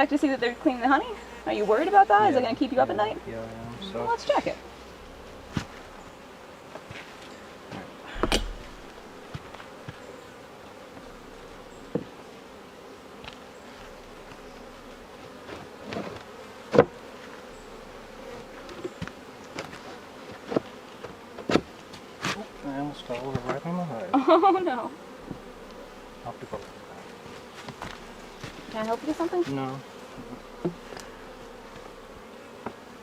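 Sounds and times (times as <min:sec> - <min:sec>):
bees buzzing: 0:00.0 - 0:33.0
knocks on wooden hive: 0:08.2 - 0:10.0, 0:11.9 - 0:12.2, 0:15.9 - 0:17.0.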